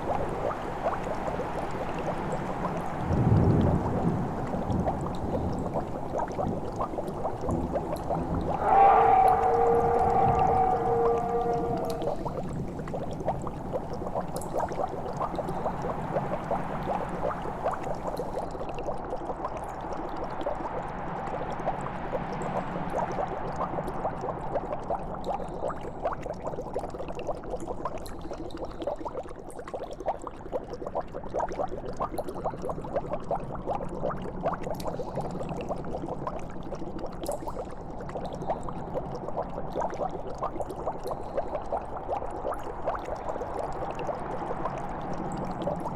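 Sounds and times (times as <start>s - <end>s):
liquid bubbling and gurgling: 0.0s - 45.9s.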